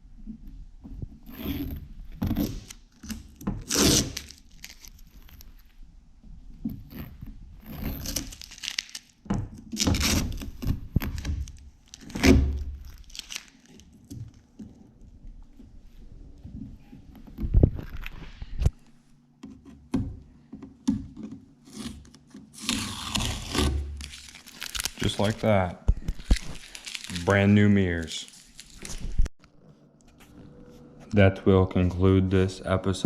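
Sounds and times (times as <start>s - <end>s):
tape tearing off: 1.2s - 5.6s, 6.8s - 14.4s, 21.6s - 29.3s.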